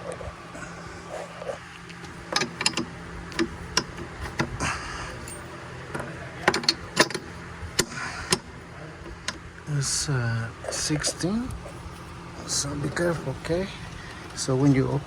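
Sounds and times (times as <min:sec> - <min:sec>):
steady low hum: 0:00.0 - 0:15.0
metallic clinks of hand tools: 0:05.0 - 0:05.7.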